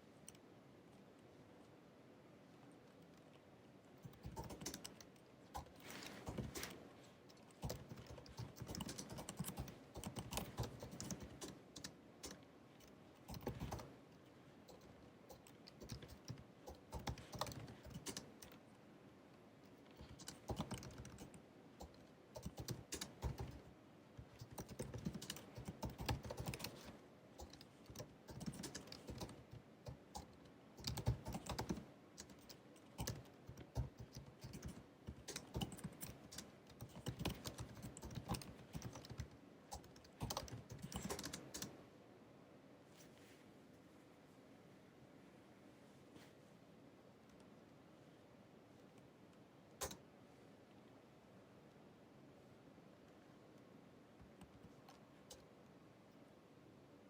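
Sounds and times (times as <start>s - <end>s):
laptop keyboard typing: 4.0s - 18.6s, 19.8s - 41.8s, 49.8s - 50.0s.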